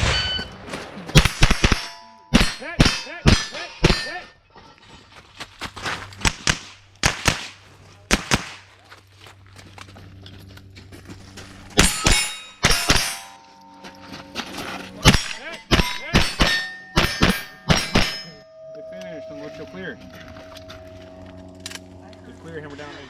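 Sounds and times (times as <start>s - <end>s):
steel targets clanging: 0.0s - 4.6s, 11.7s - 20.8s
rifle shots: 1.2s - 3.0s, 6.2s - 8.6s.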